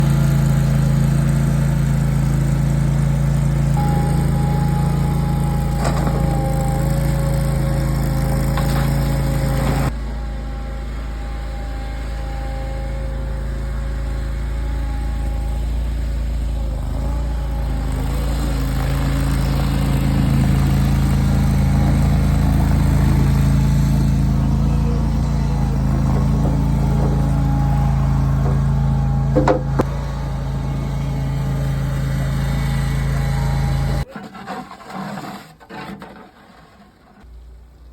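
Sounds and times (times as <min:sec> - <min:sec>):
engine humming: 0:00.0 - 0:34.2
short knock: 0:28.4 - 0:29.9.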